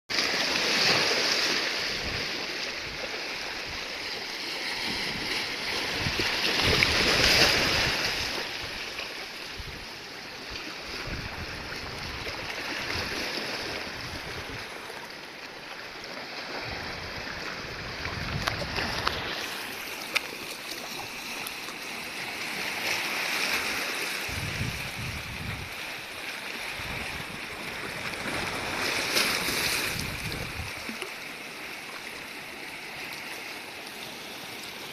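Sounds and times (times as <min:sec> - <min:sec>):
sea waves washing in: 0:00.1 - 0:34.9
wind rumbling on microphone: 0:01.8 - 0:04.0, 0:05.0 - 0:08.8, 0:09.5 - 0:14.9, 0:16.6 - 0:19.6, 0:24.2 - 0:31.0.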